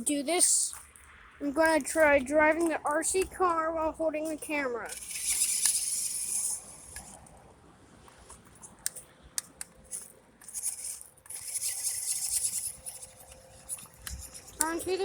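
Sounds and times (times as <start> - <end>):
sharp clicks: 4.2 - 7.3, 8.1 - 15.0
rc car motor and tyres hissing: 4.8 - 7.3, 9.9 - 15.0.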